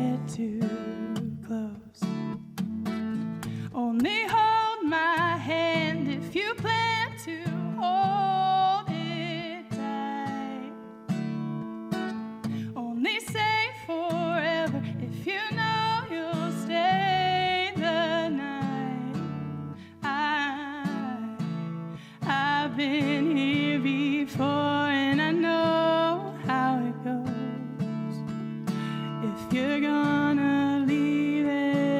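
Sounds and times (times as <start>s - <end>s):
person singing: 0.0s - 2.1s, 3.7s - 10.8s, 22.2s - 31.9s
acoustic guitar strumming: 0.0s - 31.9s.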